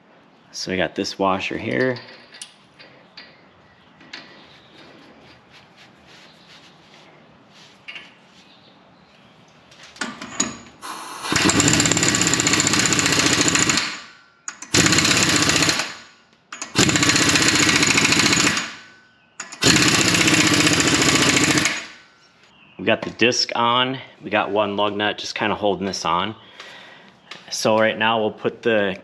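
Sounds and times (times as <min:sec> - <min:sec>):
impact wrench bursts: 0:10.0 - 0:22.1.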